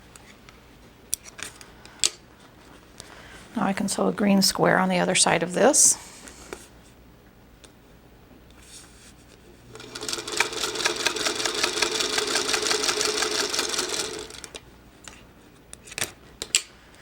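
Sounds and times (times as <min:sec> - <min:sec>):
sewing machine stitching: 0:09.7 - 0:14.6.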